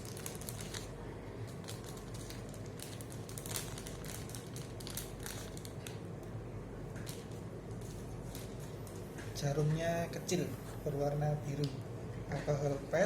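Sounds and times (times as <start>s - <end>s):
plastic packets clicking and rustling: 0.0s - 6.0s, 7.0s - 9.0s.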